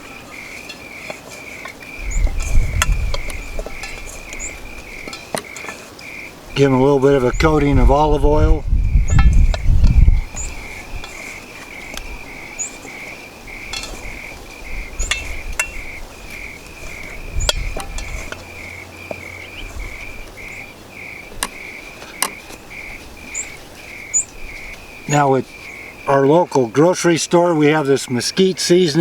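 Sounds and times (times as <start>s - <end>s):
handling clicks and knocks: 0.0s - 7.8s, 9.0s - 25.8s
insects chirping: 0.0s - 29.0s.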